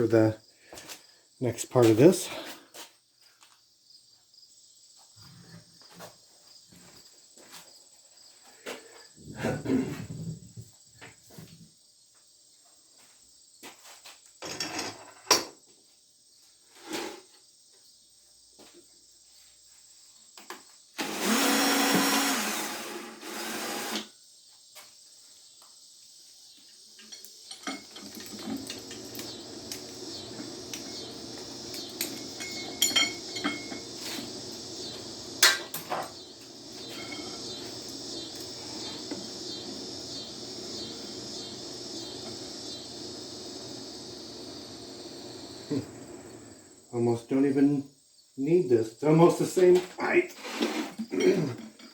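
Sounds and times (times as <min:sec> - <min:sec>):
motor running: 0:21.0 - 0:24.0, 0:28.2 - 0:46.5
loud whirring: 0:21.0 - 0:24.1, 0:28.1 - 0:46.7
knocks and clanks: 0:27.0 - 0:31.1
clinks: 0:27.0 - 0:34.0, 0:36.8 - 0:38.5.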